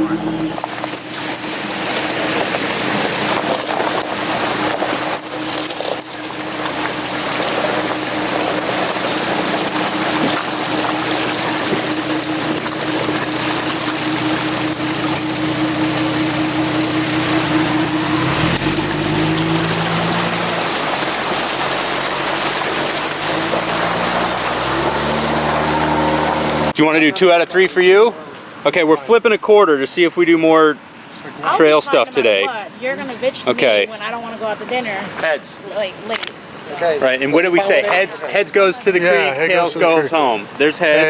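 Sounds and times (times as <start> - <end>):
lower engine note: 0.0 - 26.8
vehicle engine humming: 0.0 - 26.8.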